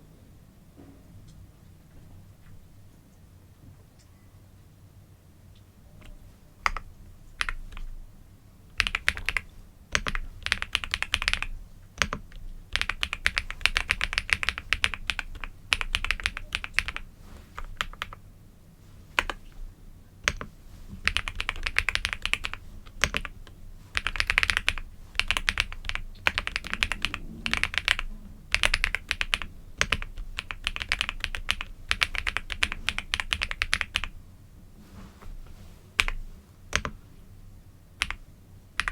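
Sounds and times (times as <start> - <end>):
typing on computer keyboard: 6.0 - 8.0, 8.7 - 18.2, 19.2 - 19.6, 20.2 - 34.1, 36.0 - 37.0, 38.0 - 38.2.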